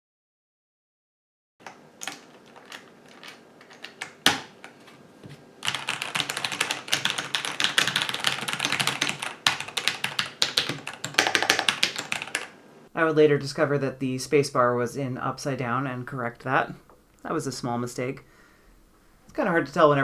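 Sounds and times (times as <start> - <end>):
typing on mechanical keyboard: 1.6 - 4.7, 5.6 - 12.5.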